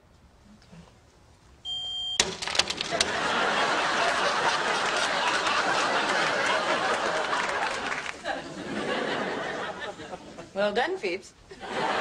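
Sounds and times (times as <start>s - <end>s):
smoke detector beep: 1.6s - 2.2s
studio audience laughing: 2.9s - 10.5s, 11.5s - 12.0s.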